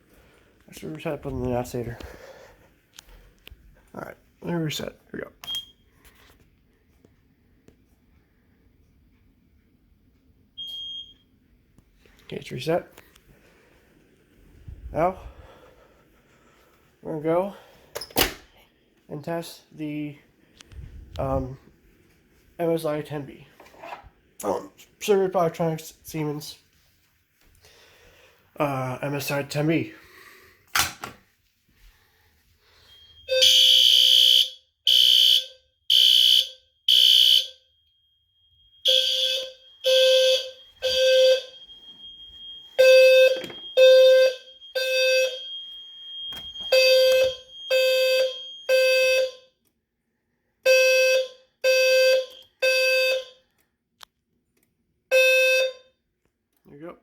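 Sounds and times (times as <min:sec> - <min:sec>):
low square-wave alarm tone: 0:10.2 - 0:11.6, 0:32.6 - 0:49.6, 0:50.6 - 0:53.6, 0:55.1 - 0:56.0
higher-pitched fire alarm horn: 0:32.8 - 0:37.7, 0:38.7 - 0:49.6, 0:50.6 - 0:53.4, 0:55.1 - 0:55.9.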